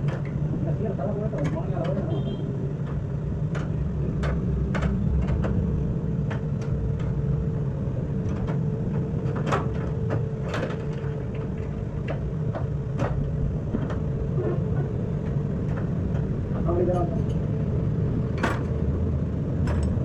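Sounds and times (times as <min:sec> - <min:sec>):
sharp clicks and knocks: 0:00.0 - 0:00.5, 0:01.3 - 0:07.4, 0:08.2 - 0:17.5, 0:18.3 - 0:18.8, 0:19.6 - 0:20.0
low rumble: 0:02.5 - 0:20.0.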